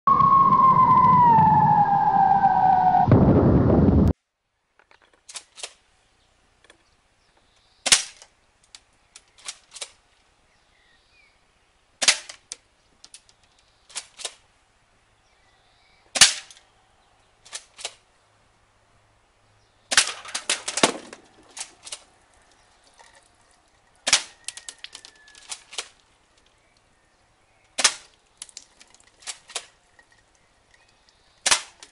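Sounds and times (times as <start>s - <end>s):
loud falling tone: 0.0s - 4.1s.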